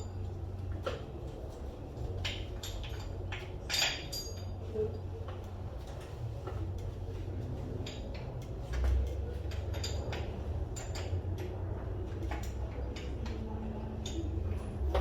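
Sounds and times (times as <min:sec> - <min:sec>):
metal engine parts clinking: 0:02.2 - 0:04.6, 0:07.8 - 0:11.6.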